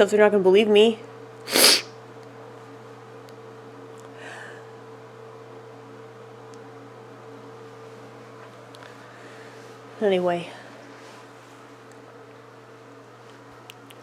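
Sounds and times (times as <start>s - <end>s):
short breathy hiss: 1.5s - 1.9s.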